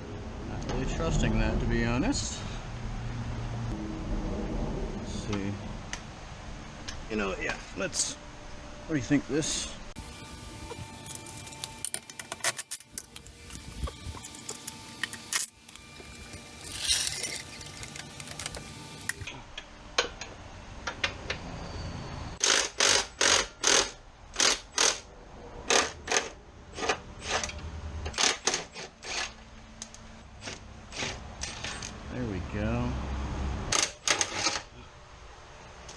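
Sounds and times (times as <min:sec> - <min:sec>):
short rasping mechanical strokes: 0:10.0 - 0:19.3.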